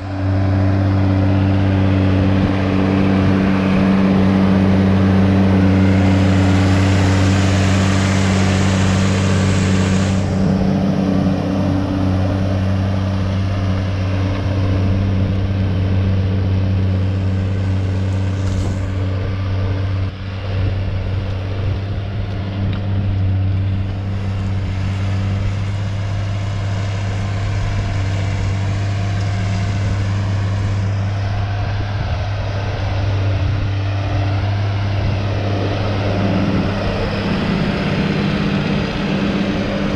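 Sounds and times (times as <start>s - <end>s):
tractor diesel engine droning: 0.0s - 39.9s
loud hiss: 6.2s - 10.4s.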